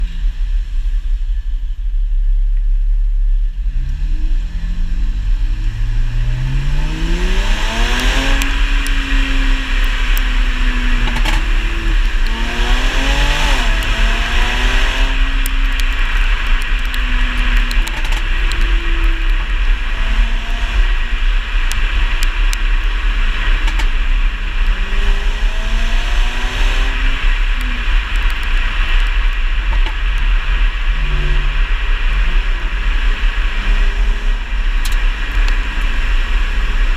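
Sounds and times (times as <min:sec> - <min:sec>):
exhaust pops and crackles: 0:00.0 - 0:36.9
car engine revving hard: 0:03.6 - 0:29.0.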